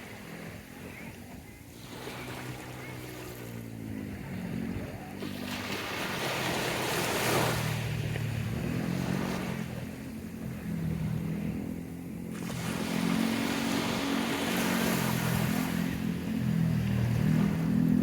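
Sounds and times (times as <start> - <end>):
low engine hum: 0.0 - 18.0
surf washing in: 0.0 - 18.0.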